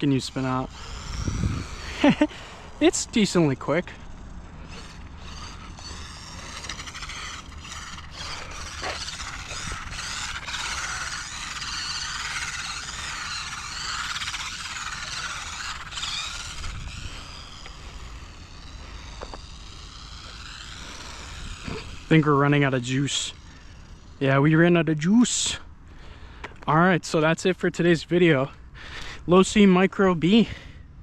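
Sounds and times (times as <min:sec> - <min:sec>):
toy car electric motor whining: 0:00.0 - 0:28.1.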